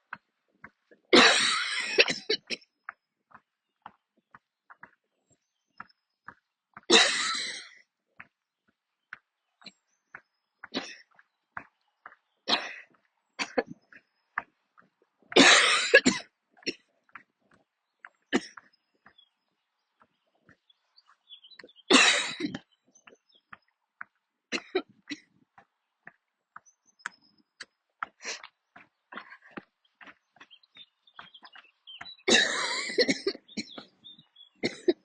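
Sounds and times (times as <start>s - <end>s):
woman coughing: 1.1s - 2.6s, 6.9s - 7.6s, 15.4s - 16.8s, 21.9s - 22.6s, 32.3s - 33.8s, 34.6s - 35.0s.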